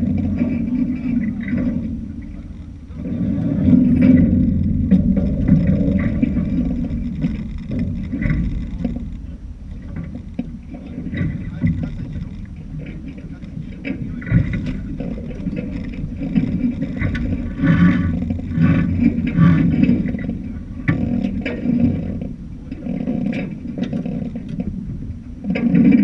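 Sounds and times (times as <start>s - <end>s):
sailing boat rumbling: 0.0s - 26.0s
water on hull: 0.0s - 26.0s
wind: 0.0s - 26.0s.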